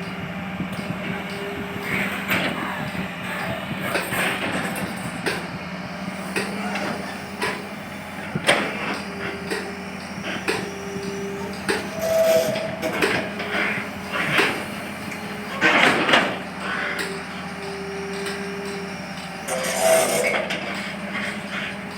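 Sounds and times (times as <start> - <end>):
excavator diesel engine running: 0.0 - 21.9
metallic knocks and clanks: 8.3 - 21.9.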